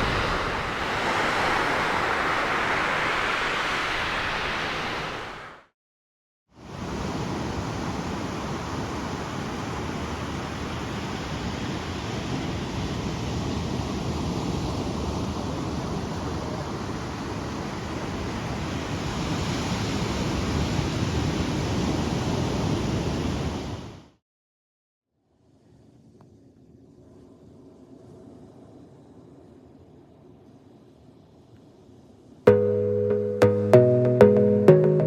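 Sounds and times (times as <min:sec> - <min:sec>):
waves breaking on a beach: 0:00.0 - 0:05.7, 0:06.6 - 0:24.2.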